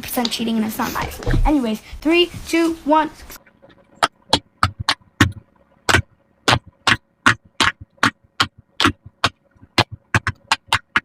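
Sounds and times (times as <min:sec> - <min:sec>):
fidget toy bubbles popping: 0:04.0 - 0:11.0.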